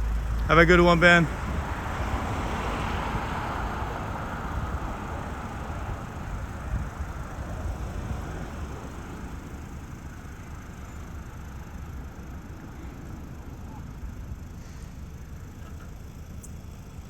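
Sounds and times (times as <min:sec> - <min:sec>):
car driving past: 0:00.0 - 0:09.7.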